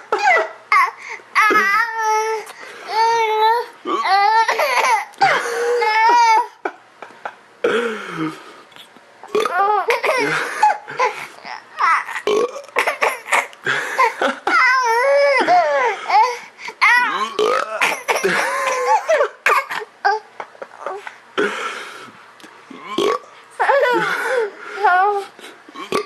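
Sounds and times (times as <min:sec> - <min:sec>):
baby squealing and babbling: 0:01.4 - 0:05.0, 0:11.4 - 0:12.3
baby burping: 0:09.3 - 0:13.5, 0:17.1 - 0:18.3.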